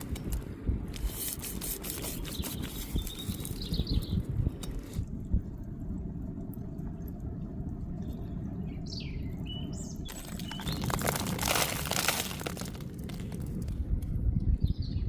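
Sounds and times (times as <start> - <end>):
steady low rumble: 2.9 - 15.0
bird chirping: 8.6 - 11.0.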